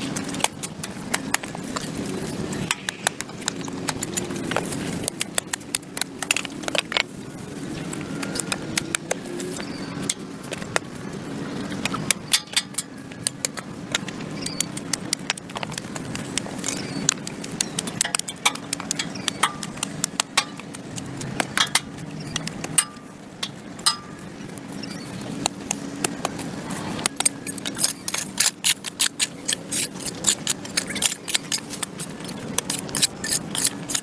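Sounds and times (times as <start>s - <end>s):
hand tool scraping concrete: 26.8s - 34.0s.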